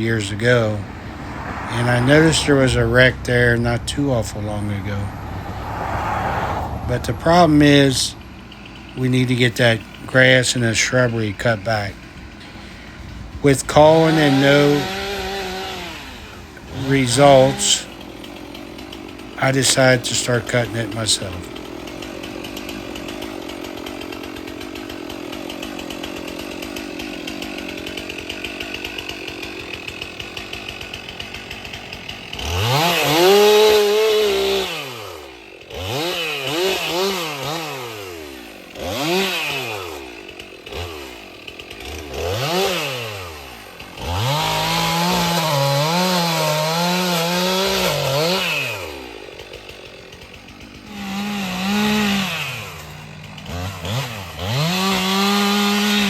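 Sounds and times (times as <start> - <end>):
chainsaw cutting brush: 0.0 - 56.0
chainsaw idling and revving: 0.0 - 56.0.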